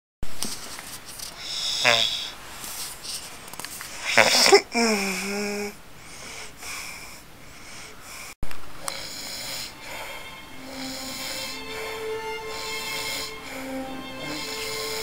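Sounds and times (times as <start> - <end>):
rasping breaths: 6.0 - 15.0
man snoring: 8.8 - 9.9, 10.6 - 13.6, 14.2 - 15.0.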